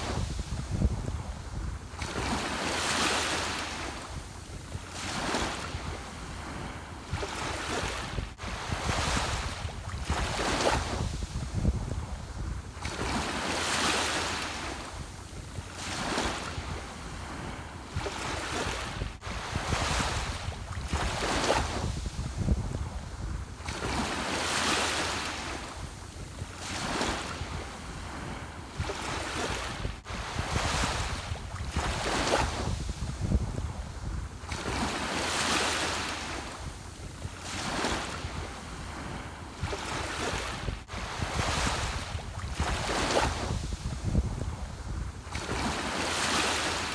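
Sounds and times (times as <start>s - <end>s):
low wind rumble: 0.0s - 2.5s, 5.8s - 13.4s, 16.6s - 23.8s, 27.4s - 35.0s, 38.3s - 45.8s
ocean waves washing in: 0.0s - 46.9s.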